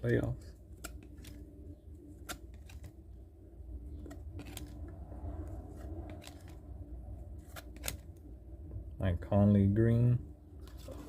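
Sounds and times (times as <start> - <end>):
low steady hum: 0.0 - 11.0
cards sliding and flipping: 0.7 - 3.0, 3.9 - 6.6, 7.4 - 8.2, 10.6 - 11.0.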